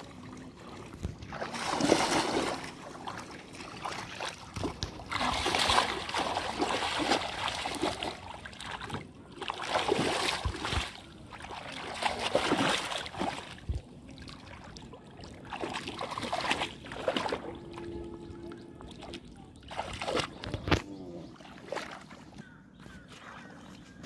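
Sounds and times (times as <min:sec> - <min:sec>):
shallow water splashing: 0:00.0 - 0:22.4.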